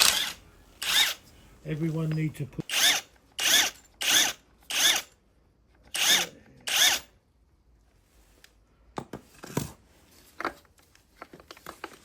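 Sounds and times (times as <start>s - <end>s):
power drill spinning: 0.0s - 1.3s, 2.7s - 5.2s, 5.9s - 7.1s.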